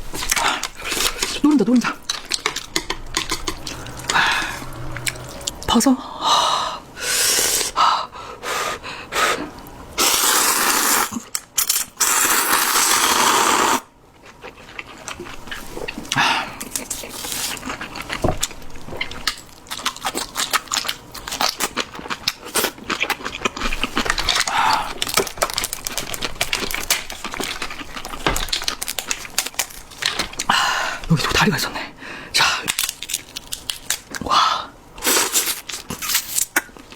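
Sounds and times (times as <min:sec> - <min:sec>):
wet chewing: 0:00.1 - 0:05.7, 0:14.2 - 0:30.5
slurping noodles: 0:00.4 - 0:05.7, 0:10.0 - 0:11.2, 0:12.0 - 0:13.9.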